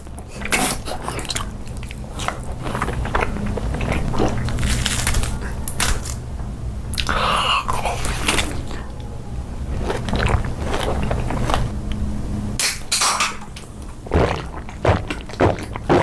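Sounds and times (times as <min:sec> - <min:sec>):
steady low hum: 0:00.0 - 0:16.0
person biting and chewing: 0:00.4 - 0:06.2, 0:09.8 - 0:11.7, 0:14.0 - 0:16.0.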